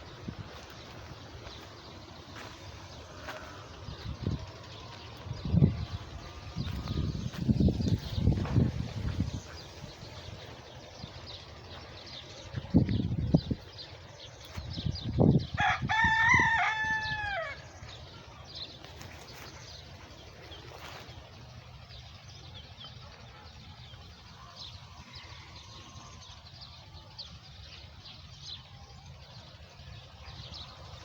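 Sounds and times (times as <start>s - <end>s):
small birds chirping: 0.0s - 31.0s
rooster crowing: 15.5s - 17.8s.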